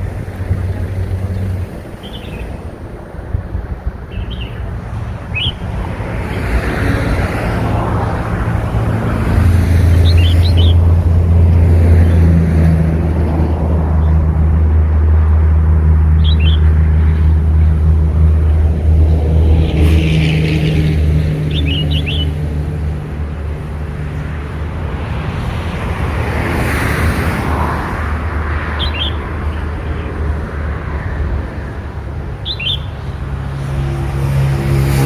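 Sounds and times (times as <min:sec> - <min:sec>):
bird chick chirping: 0:32.4 - 0:32.9.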